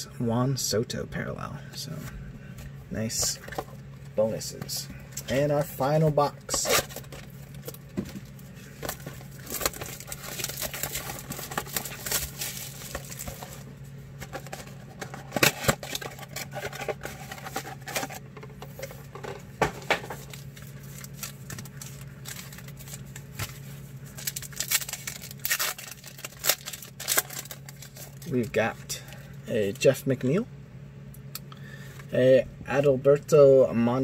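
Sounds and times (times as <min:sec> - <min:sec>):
low steady hum: 0:00.0 - 0:34.0
foil wrapper crinkling and tearing: 0:05.2 - 0:18.2, 0:20.1 - 0:28.6.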